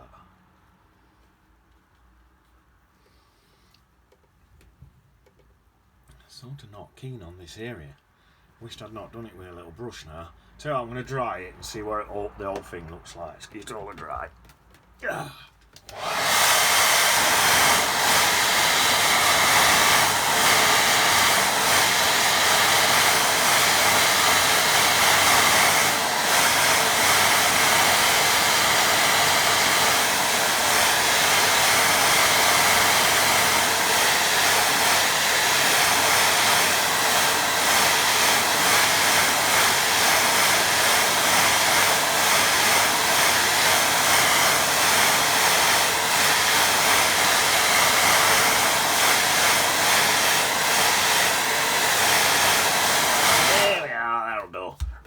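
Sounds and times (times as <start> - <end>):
hair dryer blowing: 15.8 - 55.0.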